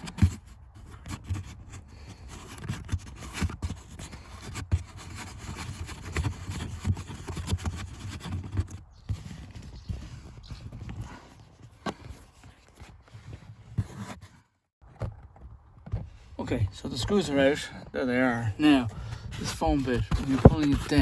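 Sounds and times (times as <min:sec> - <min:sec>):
screwdriver knocking and scraping: 0:19.3 - 0:21.0.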